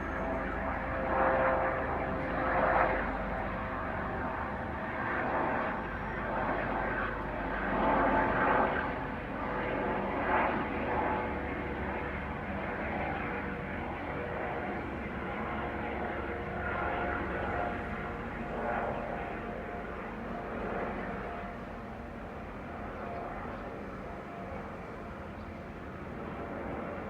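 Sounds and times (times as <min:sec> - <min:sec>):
wind: 0:00.0 - 0:27.0.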